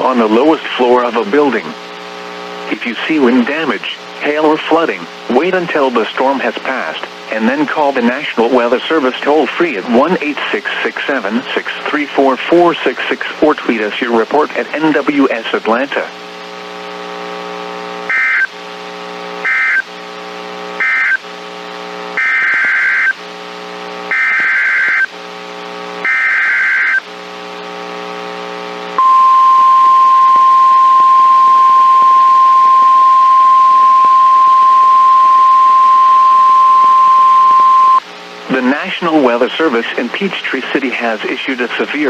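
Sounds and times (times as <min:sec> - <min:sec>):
low electronic buzz: 0:16.0 - 0:38.7
loud steady alarm tone: 0:20.8 - 0:21.2, 0:22.2 - 0:23.2, 0:24.1 - 0:25.1, 0:26.0 - 0:27.0, 0:29.0 - 0:38.0
screeching data bursts: 0:29.0 - 0:38.0.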